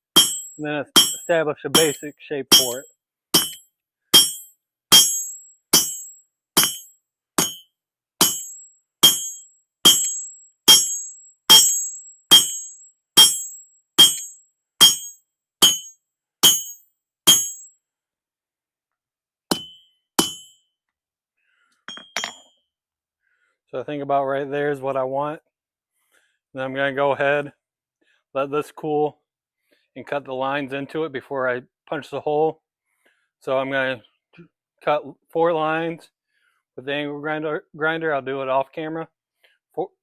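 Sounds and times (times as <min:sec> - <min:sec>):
hammer striking steel on anvil: 0:00.0 - 0:02.8, 0:03.4 - 0:03.6, 0:04.2 - 0:07.6, 0:08.2 - 0:17.7, 0:19.5 - 0:20.6.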